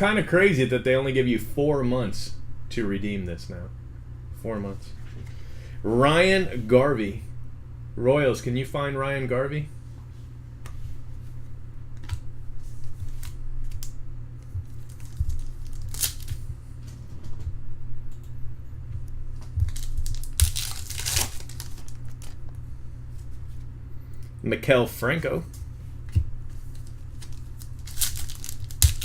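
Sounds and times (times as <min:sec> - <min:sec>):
low electrical hum: 0:00.0 - 0:29.0
card pack wrappers crinkling: 0:14.7 - 0:16.4, 0:19.6 - 0:22.4, 0:26.6 - 0:29.0
wrapper ripping: 0:14.8 - 0:16.4, 0:19.7 - 0:22.4, 0:26.7 - 0:29.0.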